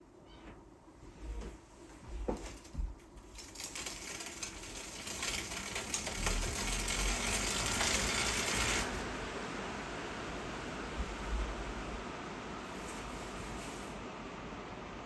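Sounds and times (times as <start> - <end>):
bicycle hub whirring: 3.4 - 9.1.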